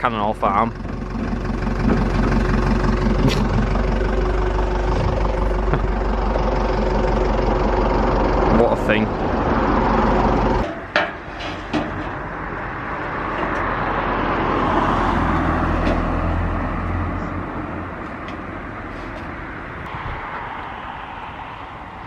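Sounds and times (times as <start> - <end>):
road traffic noise: 0.0 - 22.0
vehicle passing: 12.2 - 22.0.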